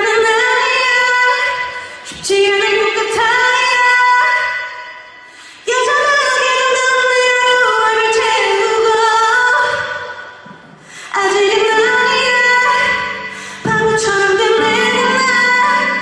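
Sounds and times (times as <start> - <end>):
woman singing sustained notes: 11.2 - 16.0.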